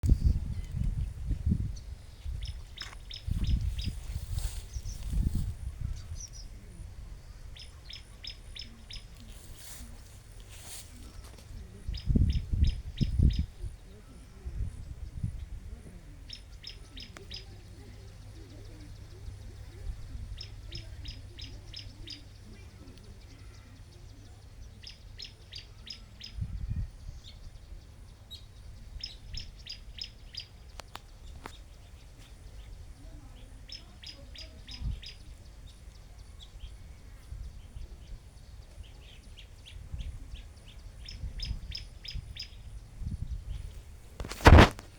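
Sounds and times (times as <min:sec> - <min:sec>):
bird chirping: 0:00.1 - 0:09.9, 0:16.2 - 0:43.6.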